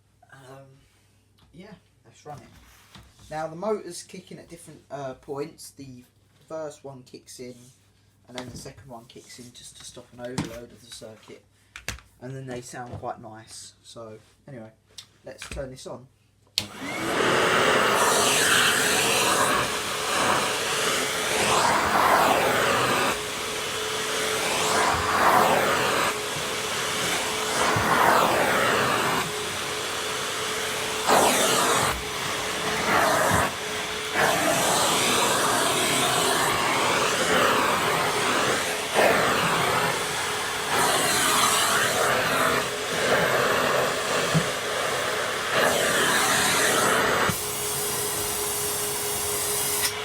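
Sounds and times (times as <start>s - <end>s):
industrial vacuum cleaner running: 16.6s - 50.0s.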